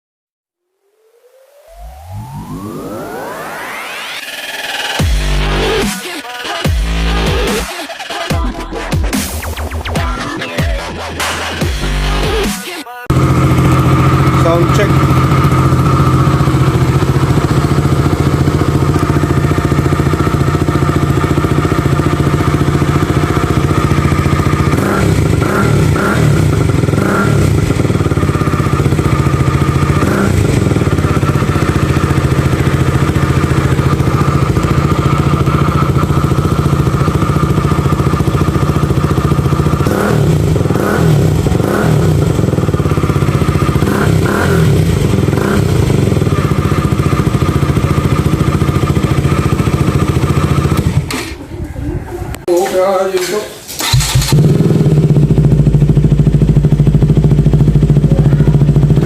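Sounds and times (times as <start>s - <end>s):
quick throttle blips: 11.2s - 51.6s, 53.2s - 58.6s
motorcycle engine idling: 13.1s - 51.6s, 53.7s - 59.0s.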